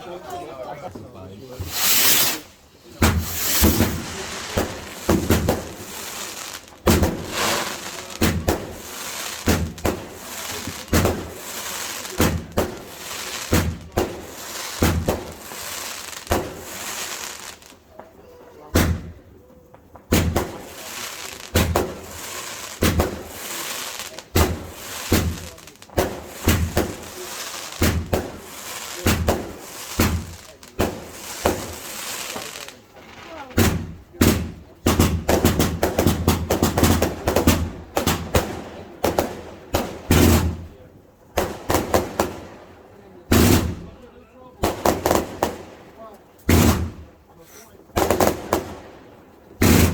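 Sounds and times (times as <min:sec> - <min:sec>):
fireworks crackling: 0:00.0 - 0:49.9
fireworks bangs: 0:01.0 - 0:49.9
steady hiss: 0:01.4 - 0:17.8, 0:20.4 - 0:33.4.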